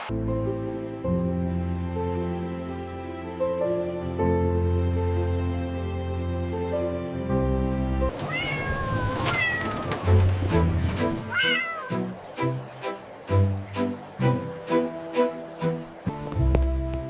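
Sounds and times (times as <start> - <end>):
background music: 0.0 - 8.2, 9.8 - 17.0
cat meowing: 8.1 - 10.3, 11.2 - 12.1.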